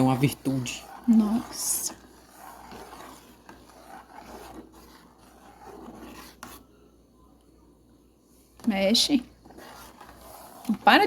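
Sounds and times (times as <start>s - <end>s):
spoon scraping pot while stirring: 0.0s - 6.6s, 9.0s - 11.0s.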